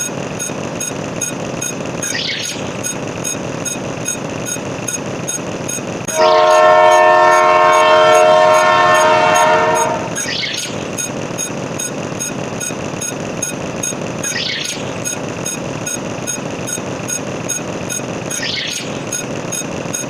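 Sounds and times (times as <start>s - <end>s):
moving train rumble and clicking: 0.0s - 20.0s
train horn chord: 6.1s - 10.3s.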